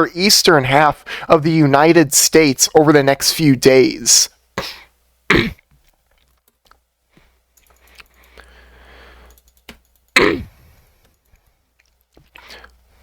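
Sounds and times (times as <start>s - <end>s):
man clearing his throat: 4.6s - 5.6s, 10.2s - 10.6s
faint hiss of breath: 7.2s - 9.5s.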